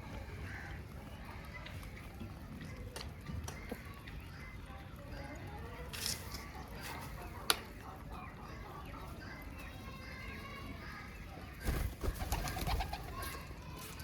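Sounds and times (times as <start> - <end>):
birds calling softly: 0.0 - 14.0
wing flapping and rustling: 11.6 - 14.0.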